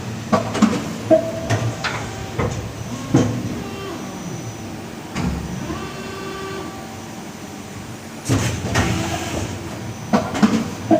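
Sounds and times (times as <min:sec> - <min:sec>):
machine clunk: 0:00.3 - 0:03.6, 0:08.2 - 0:10.9
machine motor whine: 0:01.3 - 0:10.1.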